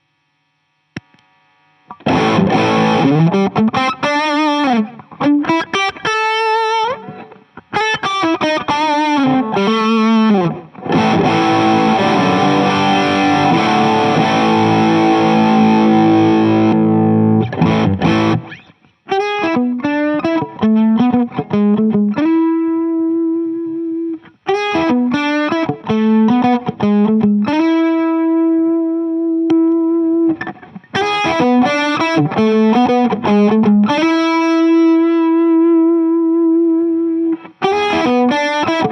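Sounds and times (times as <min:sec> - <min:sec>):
overdriven electric guitar lead: 0:01.9 - 0:38.9.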